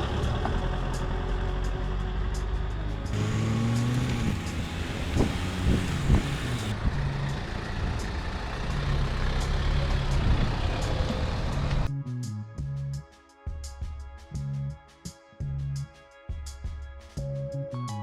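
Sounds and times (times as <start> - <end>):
music: 0.0 - 8.7, 9.3 - 18.0
vehicle road and engine noise: 0.0 - 11.9.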